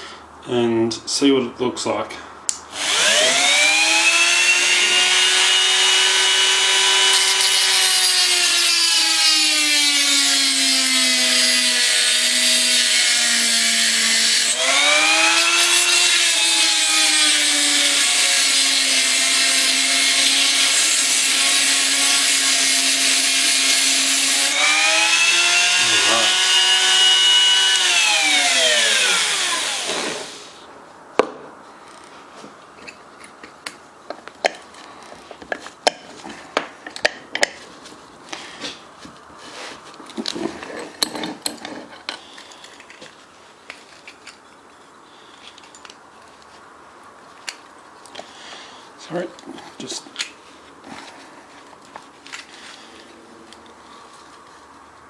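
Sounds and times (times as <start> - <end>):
rotary tool cutting metal: 2.7 - 30.6.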